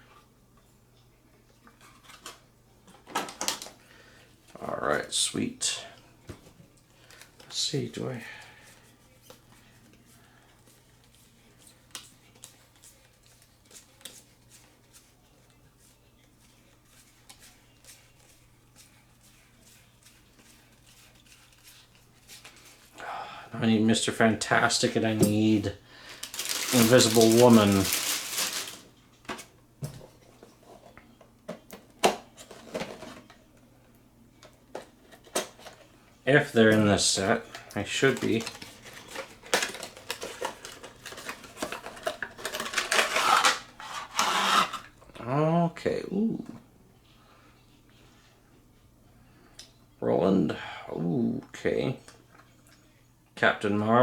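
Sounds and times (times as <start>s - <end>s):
packaging rustling: 24.7s - 29.5s, 37.2s - 44.9s.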